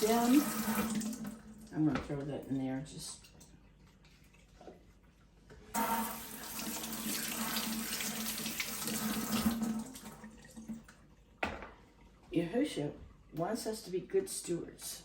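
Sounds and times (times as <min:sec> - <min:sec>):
faucet water running into sink: 0:00.0 - 0:03.6, 0:05.8 - 0:11.0.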